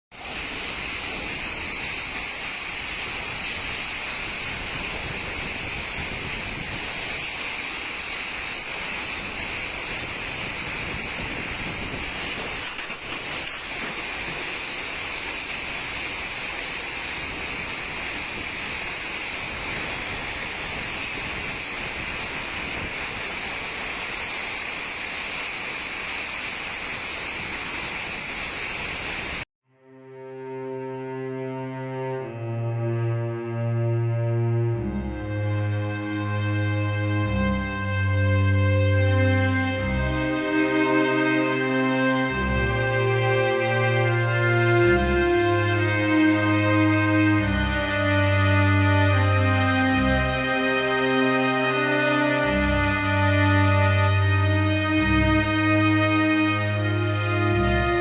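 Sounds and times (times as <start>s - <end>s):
storm wind and heavy rain: 0.1s - 29.5s, 31.2s - 58.0s
wind buffeting microphone: 0.4s - 14.7s, 15.4s - 23.8s.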